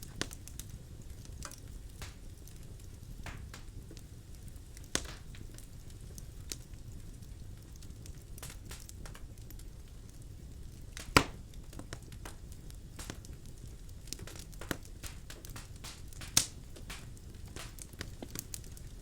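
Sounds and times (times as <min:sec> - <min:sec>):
fire crackling: 0:00.0 - 0:19.0
low rumble of flames: 0:00.0 - 0:19.0
wood popping and snapping: 0:11.0 - 0:12.1, 0:14.2 - 0:18.5.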